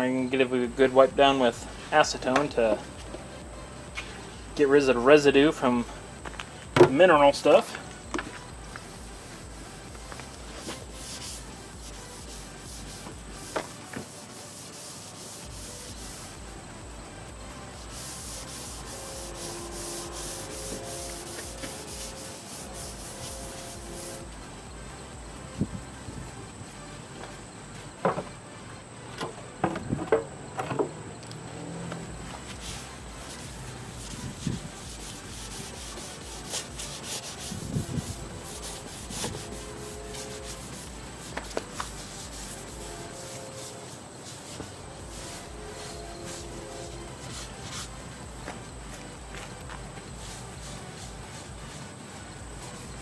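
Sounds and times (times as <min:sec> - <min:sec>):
rag wiping car panel: 0:07.0 - 0:16.4, 0:17.7 - 0:24.4, 0:32.3 - 0:51.8.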